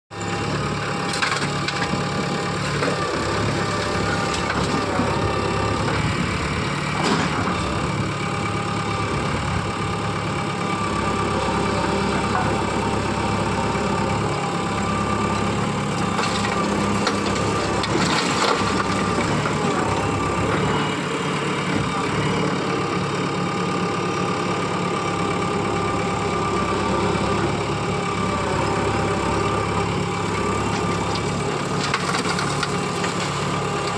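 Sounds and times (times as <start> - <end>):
diesel engine running: 0.1 - 33.9
sharp cracks and crunches: 30.7 - 33.9.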